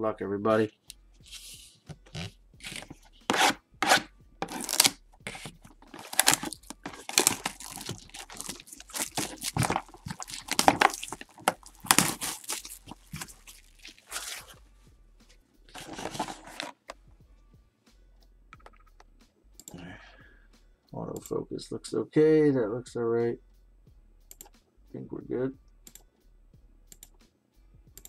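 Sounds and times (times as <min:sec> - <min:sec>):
wrapper ripping and crinkling: 0:02.6 - 0:14.6, 0:15.7 - 0:16.8.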